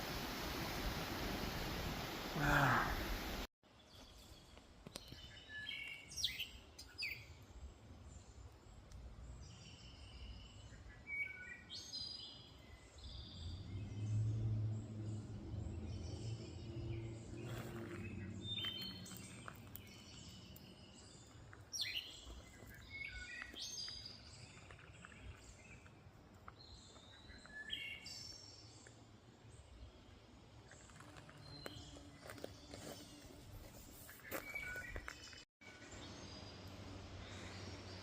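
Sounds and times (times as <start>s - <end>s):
small birds chirping: 15.0s - 38.0s.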